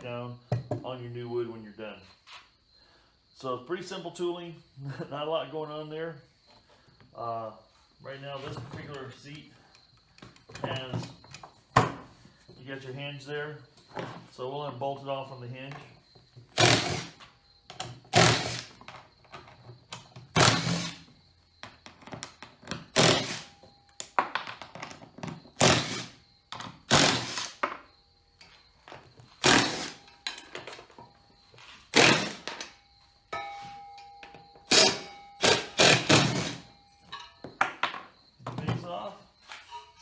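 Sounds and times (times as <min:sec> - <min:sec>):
impact driver bursts: 0:16.6 - 0:17.2, 0:18.1 - 0:18.8, 0:20.3 - 0:21.0, 0:22.9 - 0:23.5, 0:25.6 - 0:26.2, 0:26.9 - 0:27.6, 0:29.4 - 0:30.0, 0:31.9 - 0:32.4, 0:34.7 - 0:36.6.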